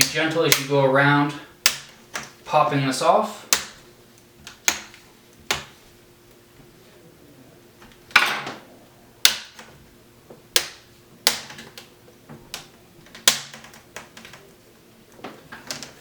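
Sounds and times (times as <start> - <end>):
plastic clips popping: 10.5 - 11.9, 12.5 - 14.4.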